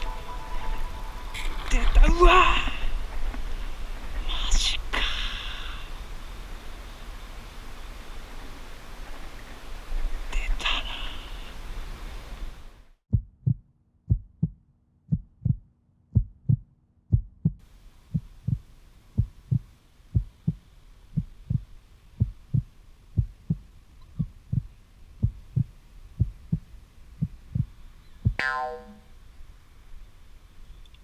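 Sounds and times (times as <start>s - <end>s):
short pitched tone: 0.0s - 1.7s
low heartbeat thumping: 13.1s - 28.4s.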